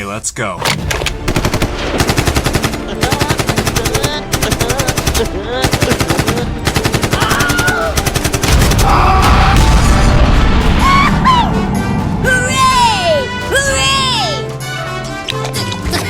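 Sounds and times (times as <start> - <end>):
background music with rattling beat: 0.6 - 8.9, 11.6 - 16.0.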